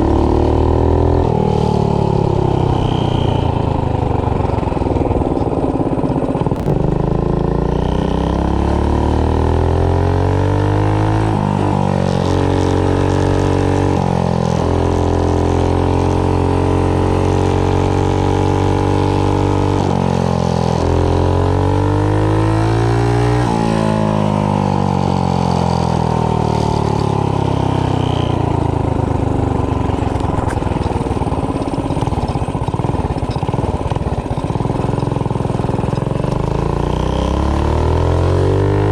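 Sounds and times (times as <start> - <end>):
mini bike engine running hard: 0.0 - 38.9.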